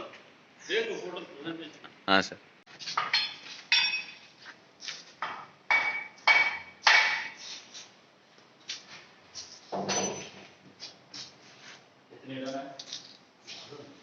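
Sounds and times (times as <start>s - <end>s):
sharp metallic clanks: 3.0s - 4.2s, 5.2s - 7.4s.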